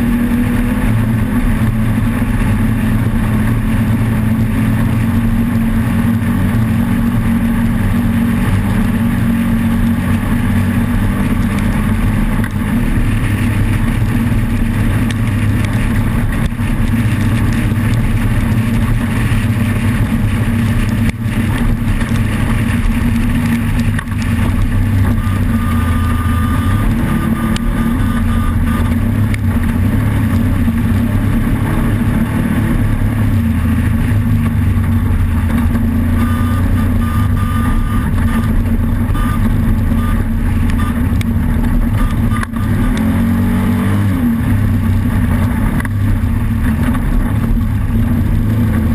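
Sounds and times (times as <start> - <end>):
engine running at high revs: 0.0 - 48.9.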